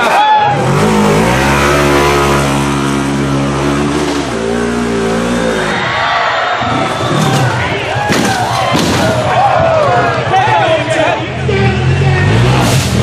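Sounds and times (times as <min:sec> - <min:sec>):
off-road vehicle engine revving: 0:00.0 - 0:06.0, 0:09.8 - 0:13.0.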